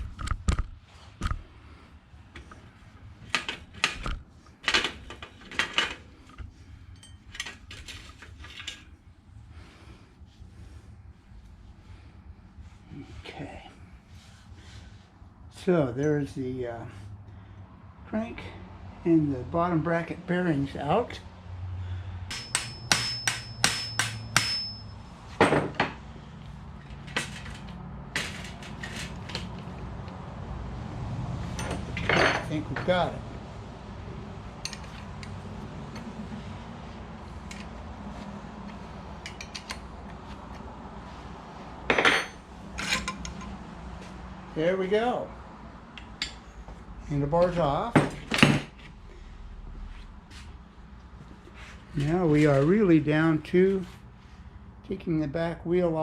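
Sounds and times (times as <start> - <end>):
thin high ring: 22.3 - 25.4
hammer striking metal: 22.3 - 25.9
metal parts clinking: 31.5 - 32.6, 39.2 - 39.9.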